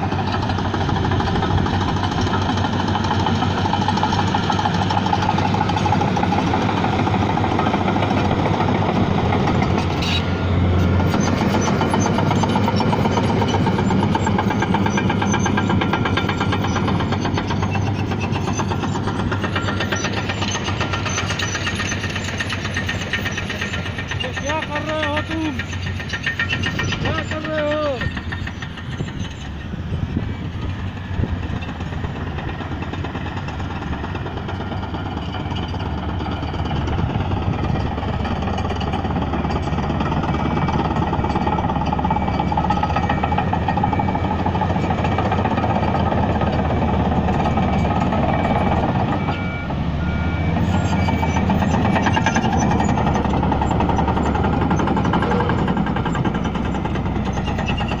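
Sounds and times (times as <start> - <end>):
bulldozer diesel engine clattering: 0.0 - 58.0
reversing alarm beeping: 10.8 - 29.4, 34.5 - 58.0.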